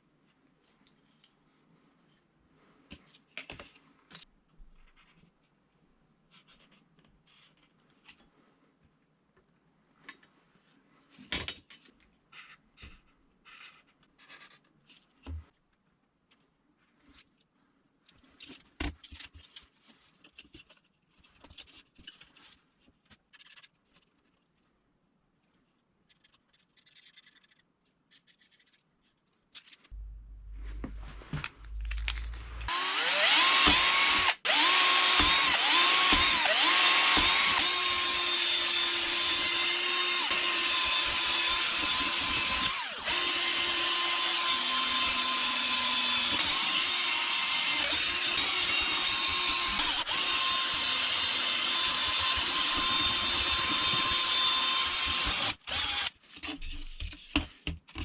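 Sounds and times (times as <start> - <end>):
tools and parts clicking: 11.4 - 12.0
electric drill whining: 31.7 - 56.1.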